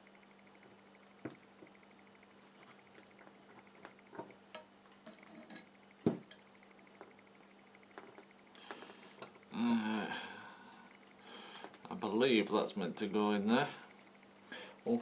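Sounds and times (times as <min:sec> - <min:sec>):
small parts clicking and tapping: 0:07.9 - 0:09.5.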